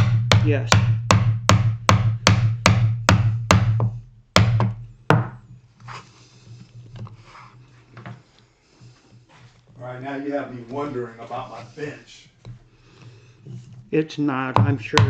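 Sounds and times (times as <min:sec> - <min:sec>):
mallet striking chisel: 0:00.0 - 0:05.5, 0:14.6 - 0:15.0
faint light scraping: 0:05.8 - 0:12.4.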